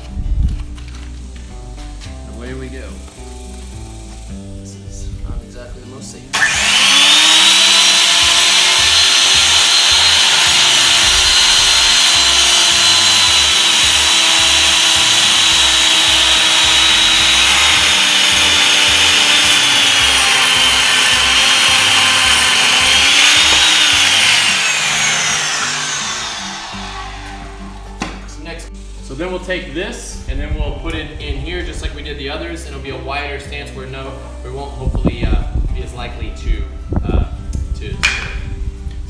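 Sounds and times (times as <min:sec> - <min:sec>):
electric saw cutting wood: 0:06.3 - 0:28.3.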